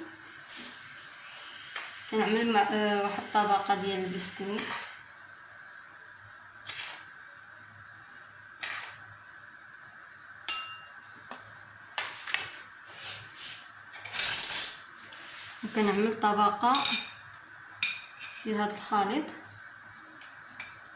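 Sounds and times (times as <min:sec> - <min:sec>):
sharp glass clink: 0:10.5 - 0:11.0.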